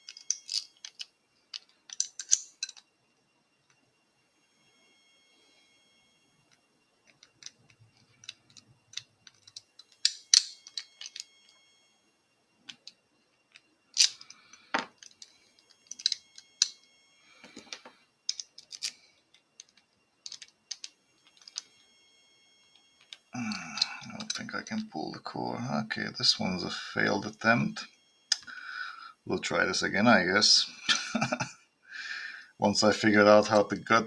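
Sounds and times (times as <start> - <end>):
padlock and key clicking and rattling: 0.0 - 2.8, 7.1 - 11.3, 12.7 - 14.4, 15.0 - 16.8, 17.6 - 21.6.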